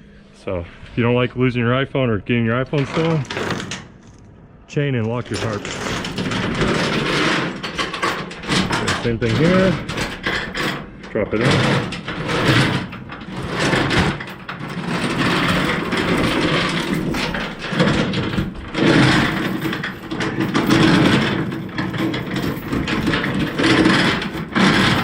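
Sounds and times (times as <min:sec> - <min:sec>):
steel chains rattling: 0:05.2 - 0:25.0.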